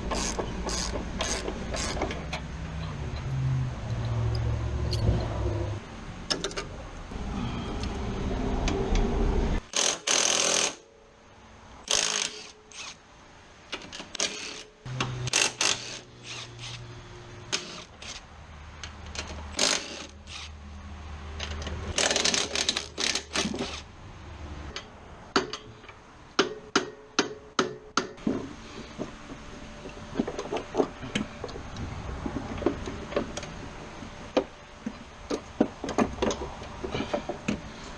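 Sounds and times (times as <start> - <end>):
hand tools clicking: 21.4 - 23.7.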